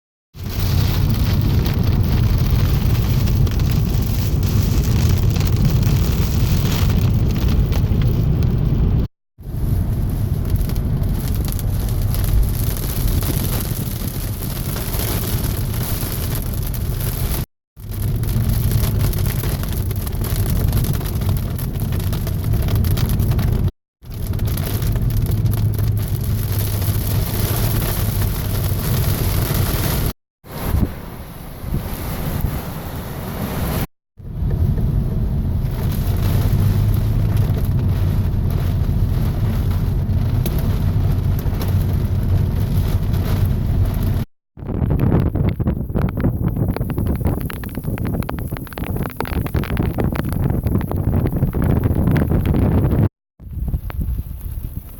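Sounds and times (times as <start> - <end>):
low thunder rumble: 0.4 - 33.5.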